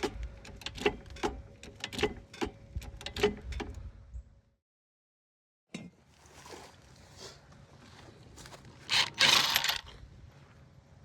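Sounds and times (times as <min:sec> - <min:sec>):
metallic clicking of lug wrench: 0:08.9 - 0:09.9.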